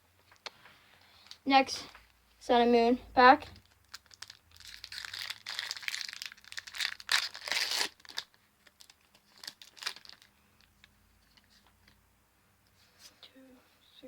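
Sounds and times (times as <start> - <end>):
foil wrapper crinkling and tearing: 3.6 - 10.3.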